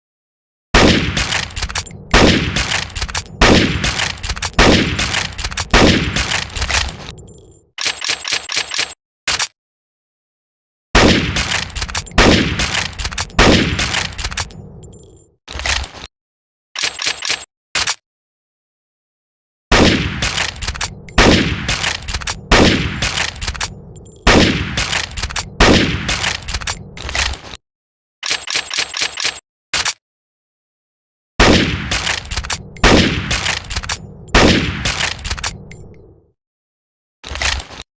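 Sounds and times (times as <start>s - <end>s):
rifle shots with ringing tail: 0.8s - 7.1s, 11.0s - 14.6s, 21.2s - 23.4s, 32.8s - 35.2s
rifle bolt clicks: 31.9s - 36.0s.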